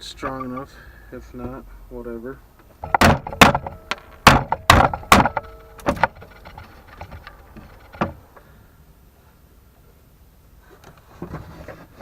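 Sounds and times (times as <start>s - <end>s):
hammer knocking on screws: 2.8s - 8.2s.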